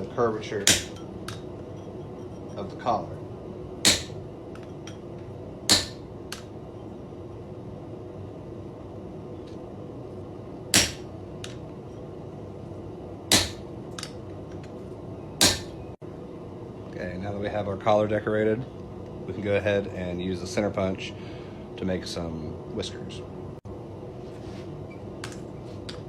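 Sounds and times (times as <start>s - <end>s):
hammer striking steel punch: 0.6s - 1.4s, 3.8s - 4.2s, 5.7s - 6.4s, 10.7s - 11.1s, 13.3s - 13.6s, 15.4s - 15.8s.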